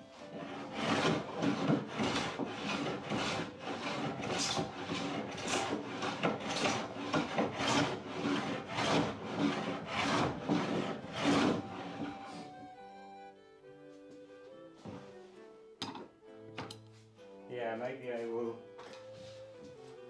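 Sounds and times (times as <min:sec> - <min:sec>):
sanding wooden door: 0:00.2 - 0:12.5.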